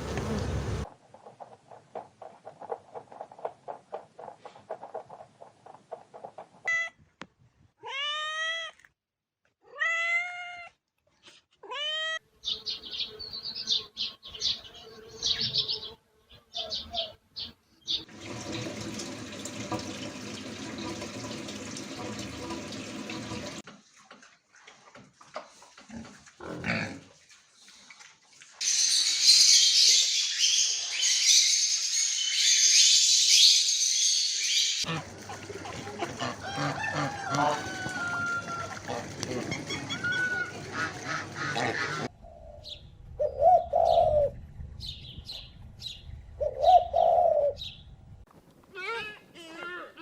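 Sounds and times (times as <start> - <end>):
cat meowing: 7.8 - 8.8, 9.6 - 10.8, 11.6 - 12.2.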